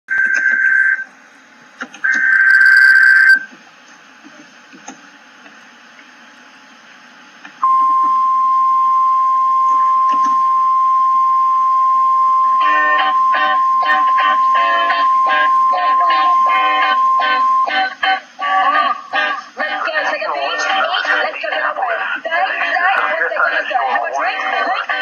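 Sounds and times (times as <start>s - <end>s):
steady warning alarm tone: 2.0s - 3.5s, 7.6s - 18.2s
buzzy digital data bursts: 2.1s - 3.4s.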